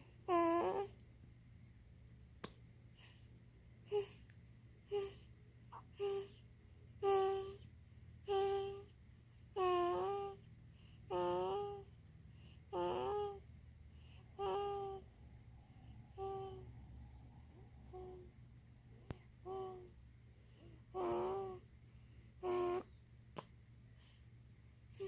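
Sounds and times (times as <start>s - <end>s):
baby humming and cooing: 0.1s - 1.0s, 3.8s - 4.3s, 4.9s - 6.4s, 7.0s - 8.9s, 9.5s - 10.5s, 11.1s - 12.0s, 12.6s - 15.3s, 16.1s - 16.8s, 17.4s - 18.4s, 19.0s - 21.7s, 22.4s - 23.5s.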